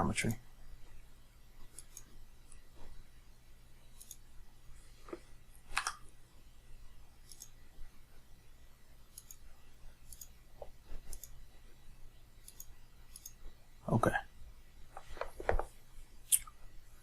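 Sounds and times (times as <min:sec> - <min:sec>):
computer mouse clicks: 0:01.6 - 0:02.6, 0:03.9 - 0:04.3, 0:07.2 - 0:07.6, 0:09.1 - 0:10.4, 0:11.0 - 0:11.4, 0:12.4 - 0:13.5.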